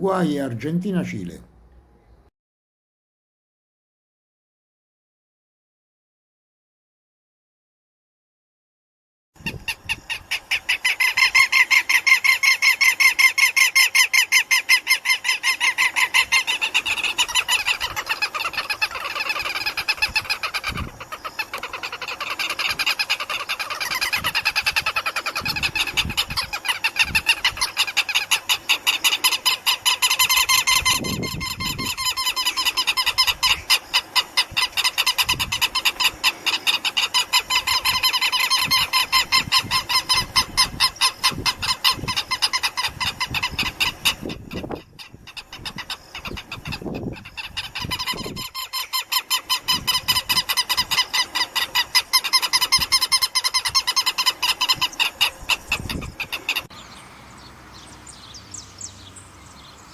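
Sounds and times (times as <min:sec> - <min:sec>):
lapwings calling harshly: 0:09.9 - 0:56.7.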